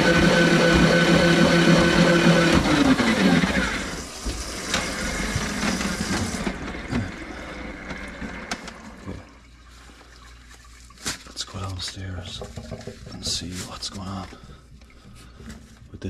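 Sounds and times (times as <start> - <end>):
electric motor humming: 0.0 - 8.6
running gurgling water: 3.8 - 16.0.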